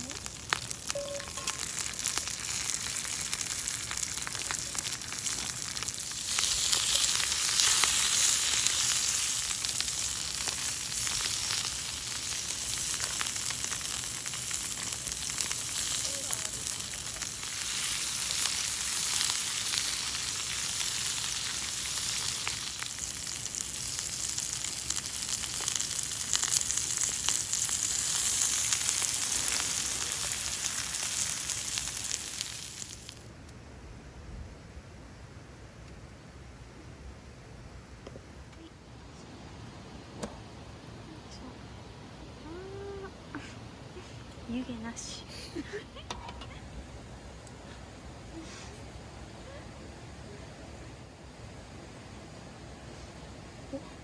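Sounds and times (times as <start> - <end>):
food frying in hot oil: 0.0 - 33.3.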